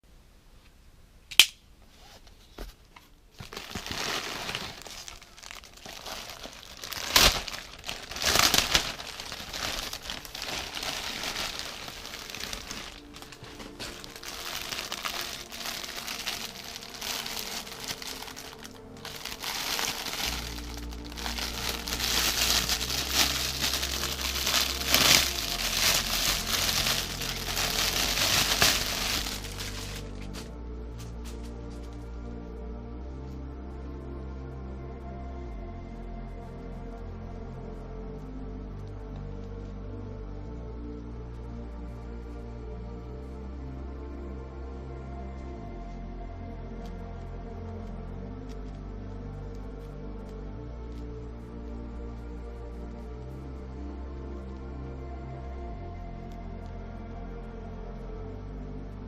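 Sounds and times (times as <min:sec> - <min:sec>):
sharp click: 0:01.3 - 0:01.7
packaging crinkling and rustling: 0:03.3 - 0:30.5
background music: 0:03.4 - 0:59.0.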